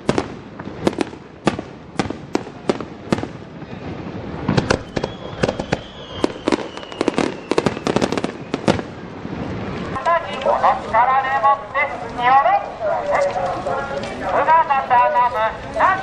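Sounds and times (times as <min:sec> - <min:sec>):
fireworks bangs and pops: 0:00.0 - 0:10.6
faint high falling whistle: 0:04.8 - 0:07.6.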